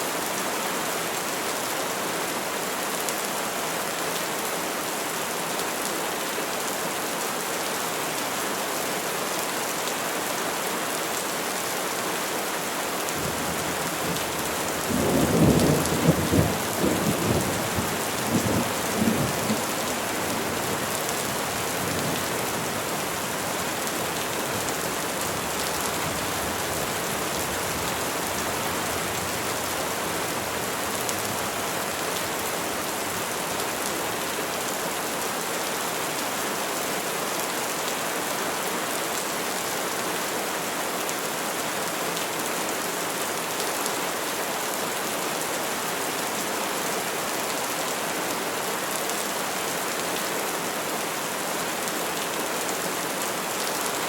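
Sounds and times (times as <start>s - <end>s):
rain pattering on foliage: 13.0s - 35.7s.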